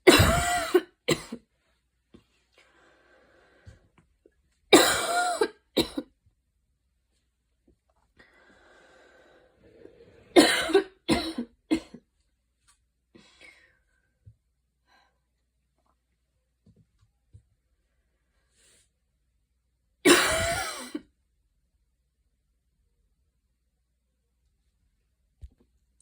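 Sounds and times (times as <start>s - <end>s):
woman coughing: 0.0s - 1.4s, 4.8s - 6.1s, 10.4s - 12.0s, 20.1s - 21.1s
faint drawn breath: 2.5s - 4.0s, 8.2s - 10.3s.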